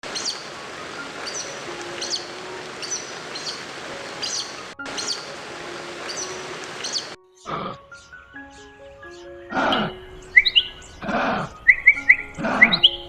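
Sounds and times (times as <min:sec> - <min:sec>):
steady background hiss: 0:00.0 - 0:13.0
small bird chirping: 0:06.0 - 0:13.0.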